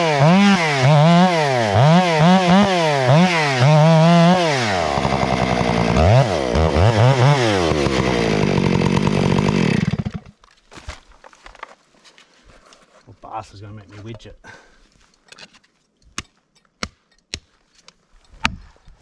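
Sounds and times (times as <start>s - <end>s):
chainsaw engine revving: 0.0s - 10.3s.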